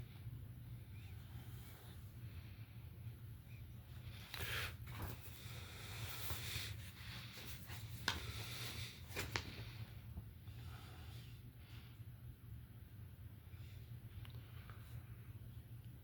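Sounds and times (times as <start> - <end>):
paper rustling: 6.1 - 9.8.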